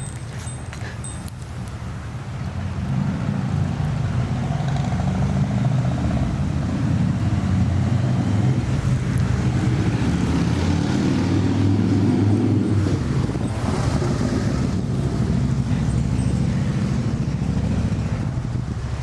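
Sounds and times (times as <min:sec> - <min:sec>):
engine running steady hum: 0:06.3 - 0:19.0.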